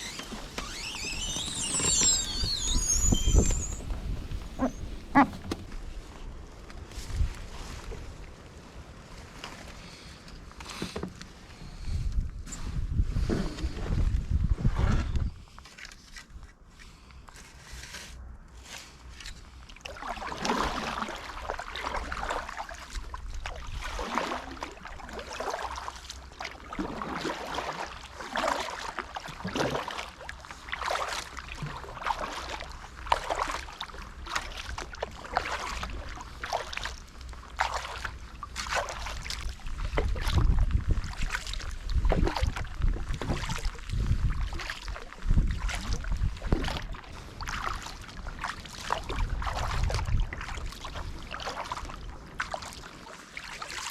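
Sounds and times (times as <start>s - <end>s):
paddle strokes splashing water: 0.0s - 6.2s, 19.7s - 53.9s.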